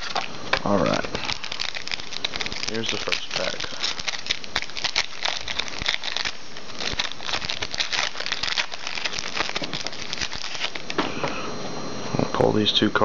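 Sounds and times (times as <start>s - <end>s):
wrapper crinkling: 0.0s - 11.0s.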